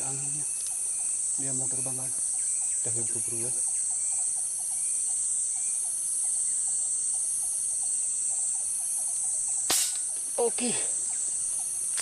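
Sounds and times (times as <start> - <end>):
high-pitched insect drone: 0.0 - 12.0
gunshot: 9.7 - 10.1.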